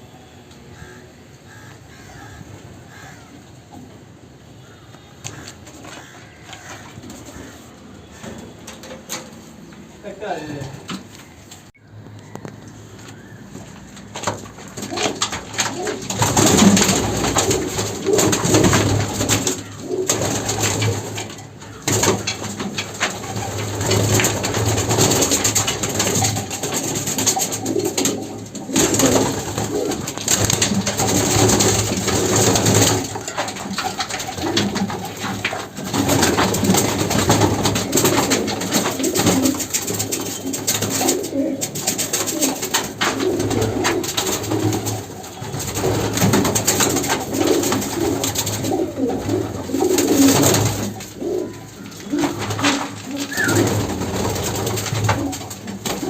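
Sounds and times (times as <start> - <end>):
pigeons cooing: 12.2 - 56.0.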